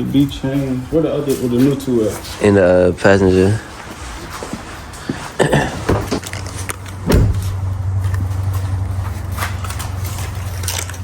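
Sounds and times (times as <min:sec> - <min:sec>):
steady low hum: 0:03.6 - 0:10.1
car door shutting: 0:05.7 - 0:07.7.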